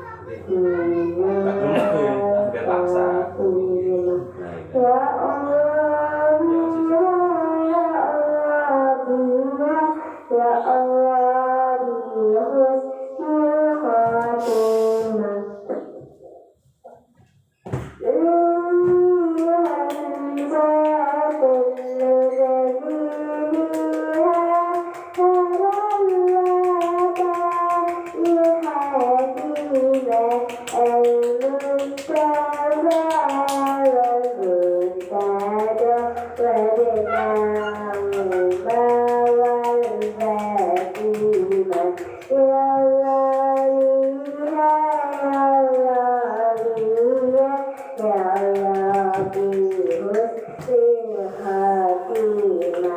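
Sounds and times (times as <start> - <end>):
person's wavering chant-like voice: 0.0 - 16.5, 18.0 - 52.9
breathy hiss: 14.4 - 15.2.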